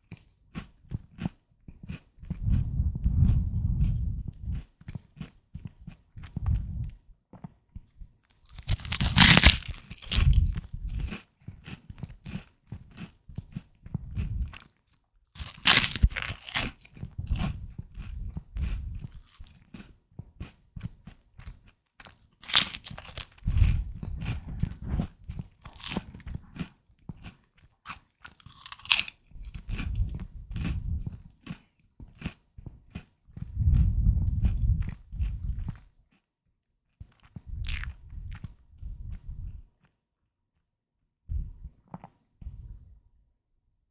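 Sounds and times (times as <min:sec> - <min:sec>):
puffed rice crunching: 0:08.3 - 0:11.2, 0:15.4 - 0:17.6, 0:22.0 - 0:24.4, 0:25.6 - 0:26.1, 0:28.3 - 0:30.0
chewing: 0:08.3 - 0:14.8, 0:15.4 - 0:16.7, 0:20.8 - 0:31.6.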